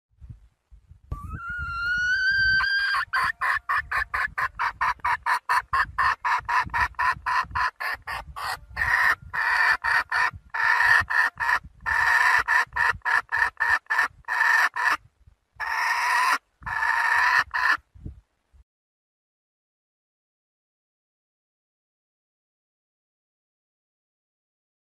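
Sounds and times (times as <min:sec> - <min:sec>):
hen clucking: 0:01.1 - 0:15.0, 0:15.6 - 0:17.8.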